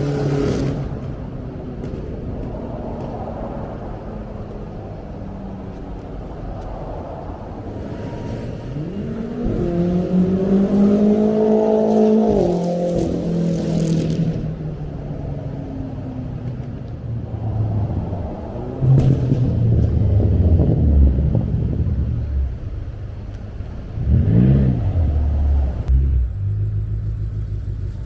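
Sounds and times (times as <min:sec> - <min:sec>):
car engine accelerating hard: 0:07.8 - 0:14.5.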